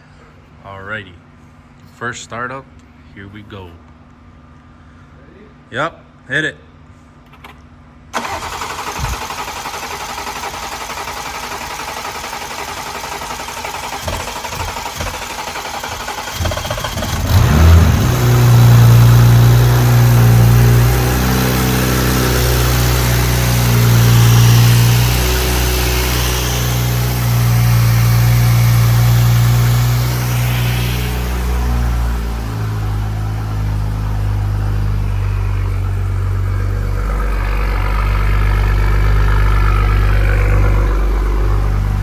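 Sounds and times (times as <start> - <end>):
car engine starting and idling: 7.2 - 42.0
starter motor cranking: 8.2 - 40.5.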